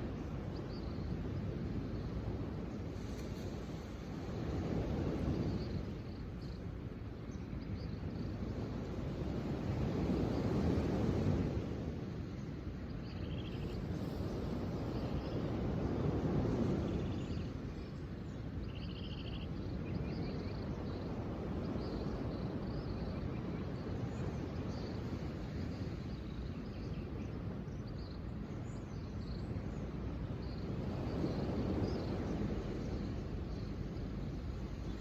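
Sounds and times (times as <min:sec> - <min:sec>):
low wash of noise: 0:00.0 - 0:35.0
faint high bird chirps: 0:18.7 - 0:20.7.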